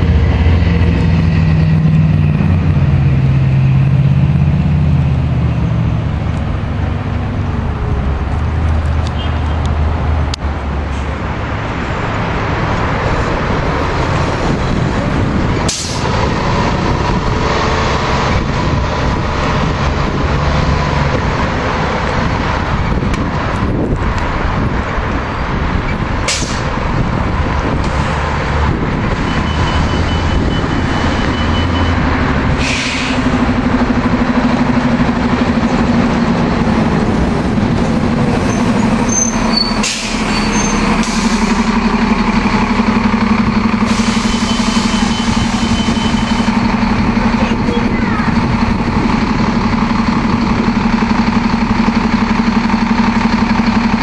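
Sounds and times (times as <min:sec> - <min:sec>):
bus diesel engines running: 0:00.0 - 0:54.0
air brake hisses: 0:32.6 - 0:33.3, 0:39.7 - 0:41.6, 0:43.8 - 0:45.8.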